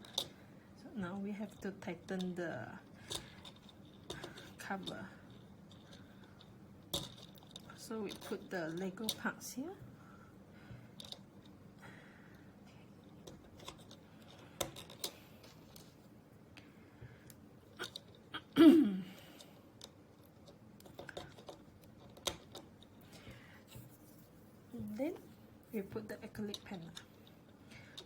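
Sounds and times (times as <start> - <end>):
plastic pieces clicking: 17.3 - 18.2.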